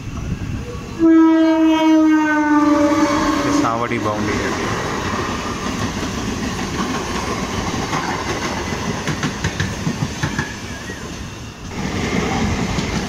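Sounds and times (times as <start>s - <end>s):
train wheels clacking on rails: 3.0s - 13.0s.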